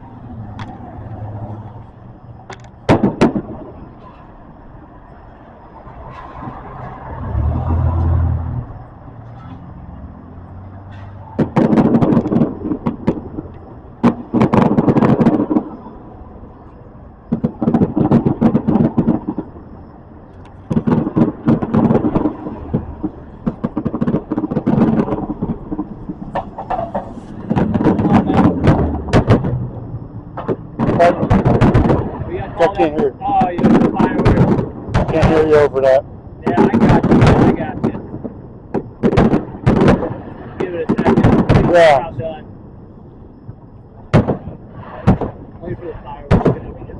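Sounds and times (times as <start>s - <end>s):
firework bangs and crackling: 0.0s - 4.6s, 10.5s - 46.9s
low firework boom: 2.3s - 4.4s, 10.9s - 16.0s, 20.5s - 42.6s.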